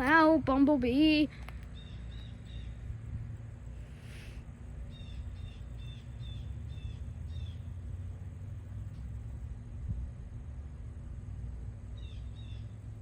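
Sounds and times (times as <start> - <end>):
low outdoor rumble: 0.0 - 13.0
bird chirping: 1.7 - 3.0, 4.8 - 7.8, 12.0 - 12.8.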